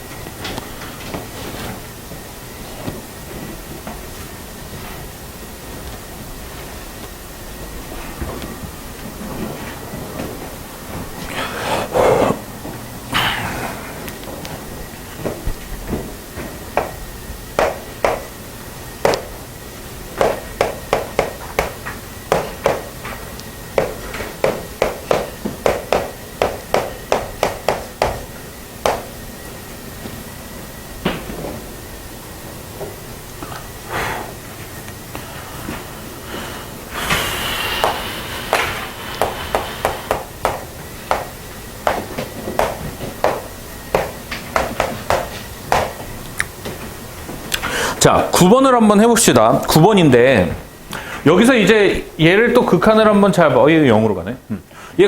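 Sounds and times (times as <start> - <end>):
sharp irregular taps: 17.6 - 18.3, 19.0 - 19.3, 20.2 - 22.9, 23.8 - 29.1, 37.8 - 46.0.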